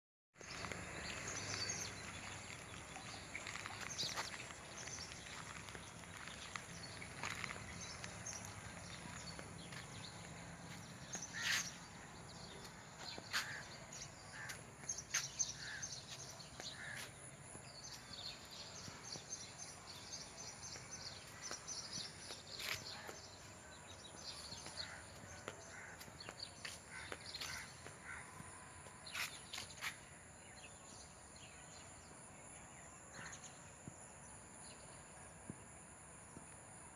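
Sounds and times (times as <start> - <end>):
sparrows chirping: 0.4 - 28.4, 29.0 - 33.7.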